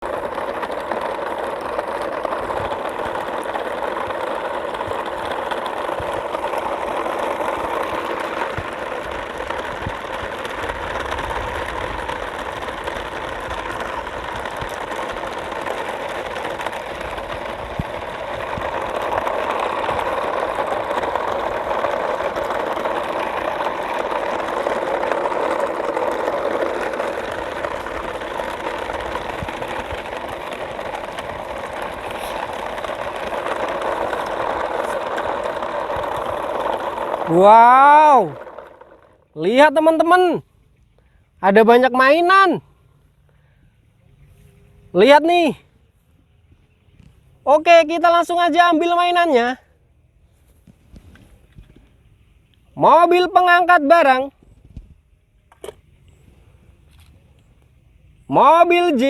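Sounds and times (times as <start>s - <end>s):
motor humming: 0.0s - 40.2s.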